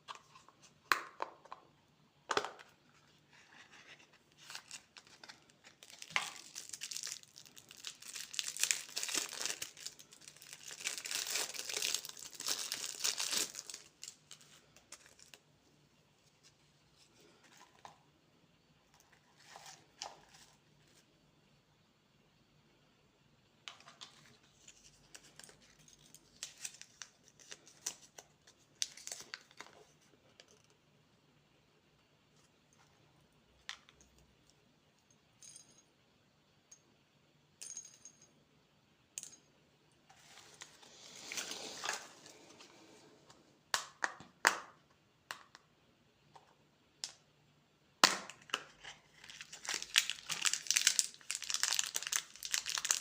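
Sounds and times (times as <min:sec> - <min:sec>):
candy wrappers crinkling and tearing: 0:04.2 - 0:15.4, 0:24.6 - 0:30.0, 0:48.0 - 0:53.0.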